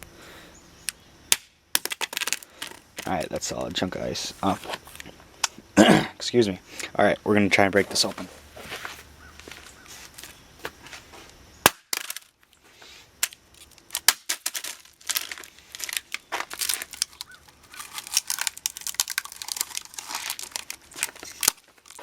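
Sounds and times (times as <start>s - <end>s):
plastic container cracking: 1.3s - 3.3s, 11.6s - 12.3s, 13.2s - 22.0s.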